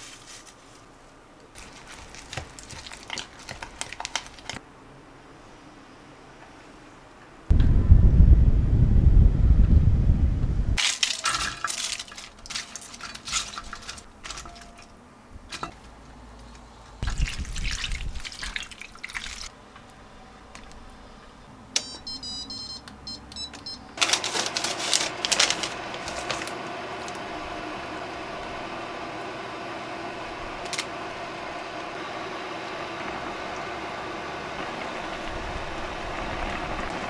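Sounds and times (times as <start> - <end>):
water splashing: 10.8 - 14.9, 17.0 - 19.5
dishes clattering: 10.8 - 15.9
high electronic beeps: 21.8 - 24.0.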